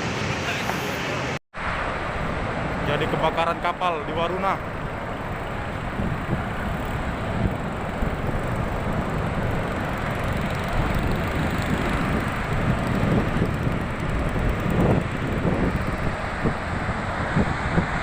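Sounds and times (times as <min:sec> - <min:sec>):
wind buffeting microphone: 0:04.6 - 0:18.0.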